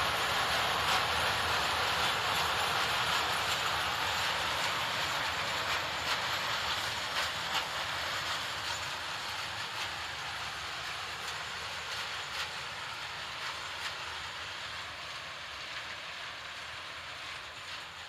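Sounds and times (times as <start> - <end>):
freight train rumble: 0.0 - 18.0
train wheels clacking on rails: 0.0 - 18.0.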